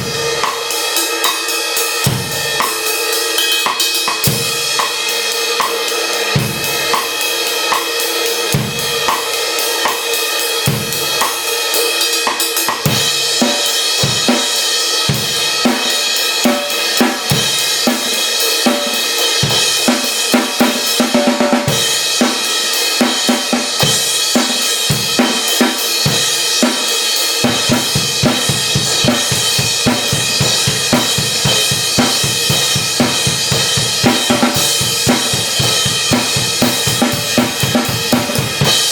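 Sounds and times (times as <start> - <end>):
snare drum: 2.0 - 7.1, 15.4 - 38.9.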